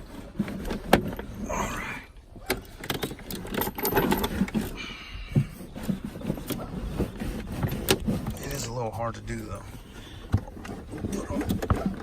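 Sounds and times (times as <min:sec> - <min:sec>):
plastic parts clicking and scraping: 0:00.0 - 0:01.5, 0:02.1 - 0:12.0.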